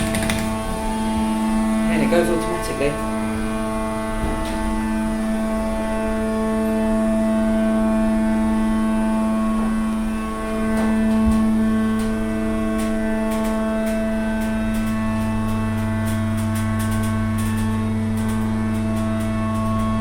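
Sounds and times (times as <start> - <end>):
platform lift drive humming: 0.0 - 20.0.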